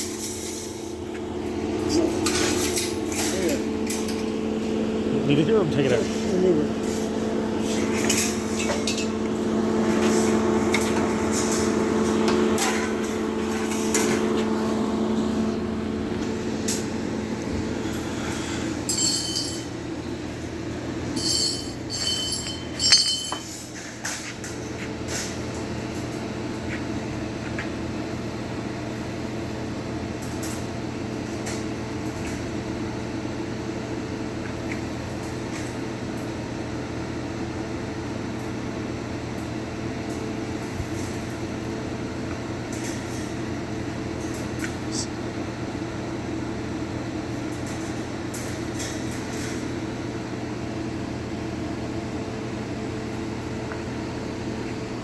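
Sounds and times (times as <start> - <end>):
workshop hum: 0.0 - 55.0
metal tubing clinking: 18.8 - 19.7, 21.2 - 23.7.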